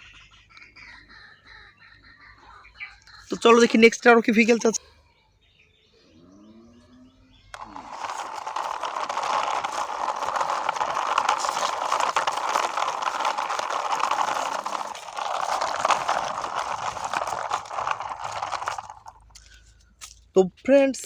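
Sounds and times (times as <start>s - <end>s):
plastic toy wheels rattling on floor: 7.5s - 19.8s.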